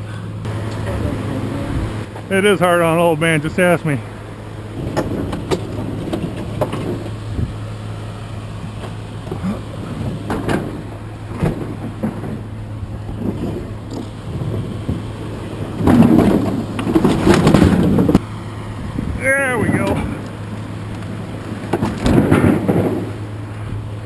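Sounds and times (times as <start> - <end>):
low engine hum: 0.0 - 24.0
scraping and rattling: 4.8 - 7.3, 8.7 - 18.2.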